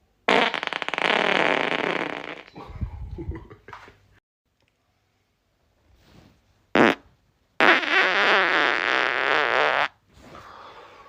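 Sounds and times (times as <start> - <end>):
man farting: 0.3 - 2.5, 6.8 - 10.0.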